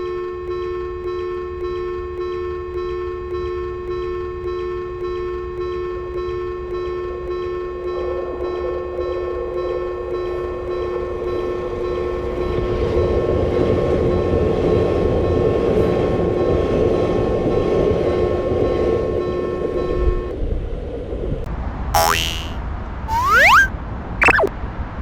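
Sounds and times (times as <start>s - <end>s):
electric train running past: 8.0s - 21.1s
high squeal falling in pitch: 22.0s - 24.5s.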